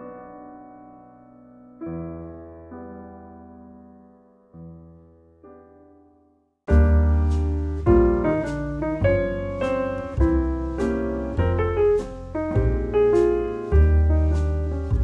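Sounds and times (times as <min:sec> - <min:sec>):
deep bass note: 0:06.7 - 0:15.0.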